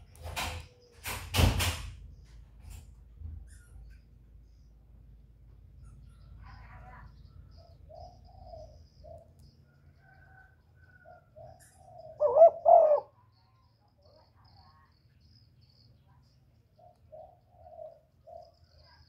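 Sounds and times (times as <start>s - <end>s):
dove cooing: 7.6s - 9.3s, 10.1s - 13.1s, 16.8s - 18.9s.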